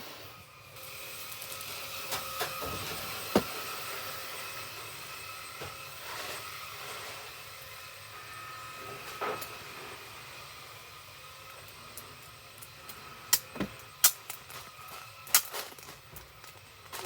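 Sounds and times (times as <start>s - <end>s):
packaging being handled: 14.3s - 17.0s.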